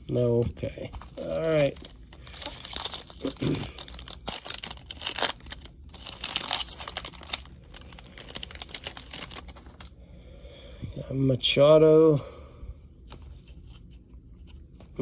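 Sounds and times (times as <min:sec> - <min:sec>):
card pack wrapper tearing: 0:01.1 - 0:09.9.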